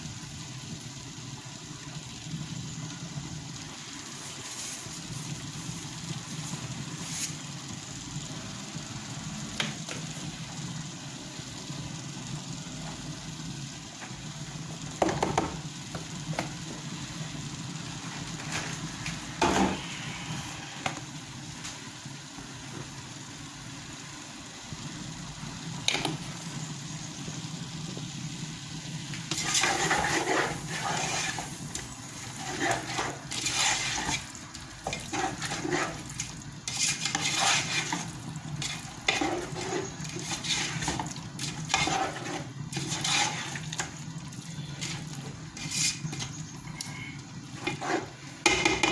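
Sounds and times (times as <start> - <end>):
spoon stirring and scraping in pot: 29.1 - 44.0, 44.6 - 48.9
utensils knocking against pot: 48.4 - 48.9.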